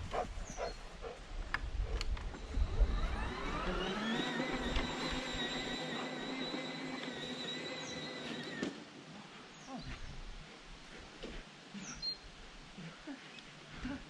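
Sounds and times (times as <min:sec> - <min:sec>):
electric mower motor whining: 0:02.3 - 0:08.8.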